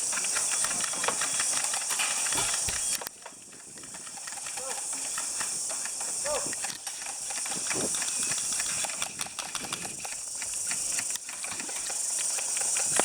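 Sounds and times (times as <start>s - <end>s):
steady high hiss: 0.0s - 3.8s
clicks and crackles: 0.0s - 13.0s.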